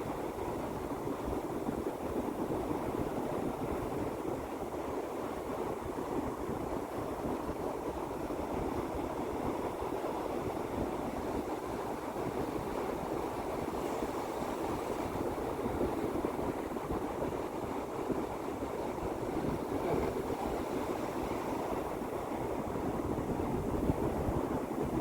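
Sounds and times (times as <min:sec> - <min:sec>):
sea waves washing: 0:18.8 - 0:22.8.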